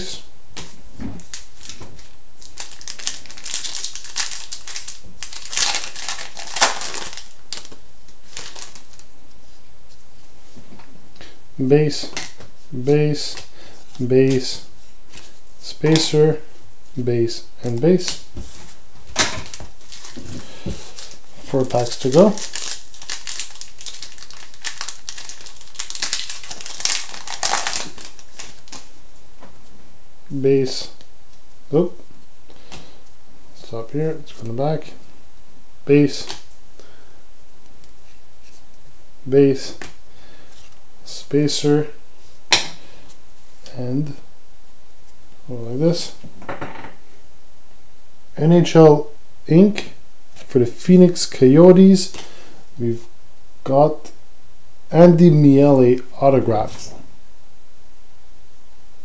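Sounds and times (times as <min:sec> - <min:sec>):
foil wrapper crinkling and tearing: 0:01.2 - 0:09.0, 0:19.2 - 0:28.9.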